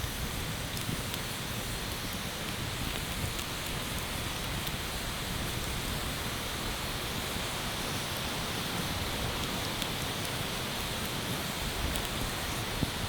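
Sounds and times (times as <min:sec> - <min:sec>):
campfire hissing and crackling: 0:00.0 - 0:13.0.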